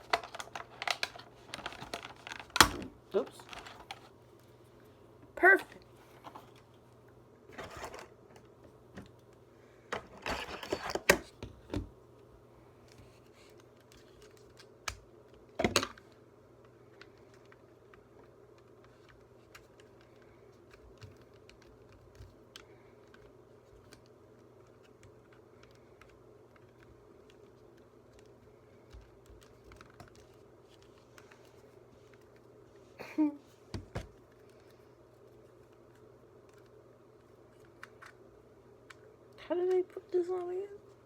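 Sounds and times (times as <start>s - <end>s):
plastic clicks and rustling: 0.0s - 4.2s, 12.8s - 32.5s.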